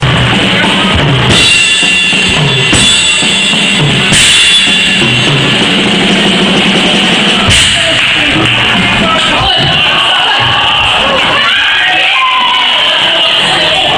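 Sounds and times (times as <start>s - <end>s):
cymbal crashes: 0.0s - 9.2s.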